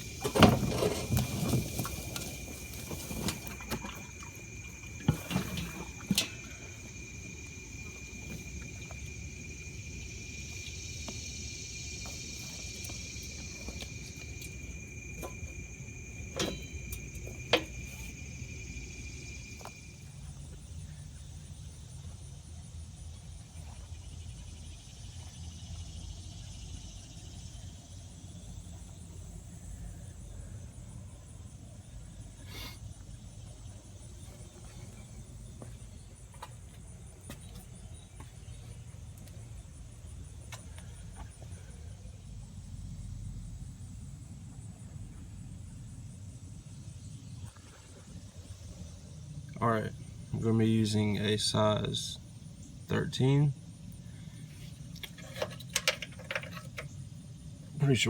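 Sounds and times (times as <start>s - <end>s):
low background hum: 0.0s - 58.0s
high-pitched insect trilling: 1.4s - 20.4s.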